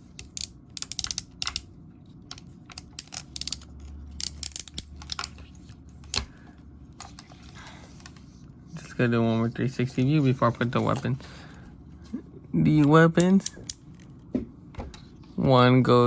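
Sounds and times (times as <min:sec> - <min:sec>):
plastic toy parts clicking: 0:00.1 - 0:01.7, 0:02.3 - 0:05.4.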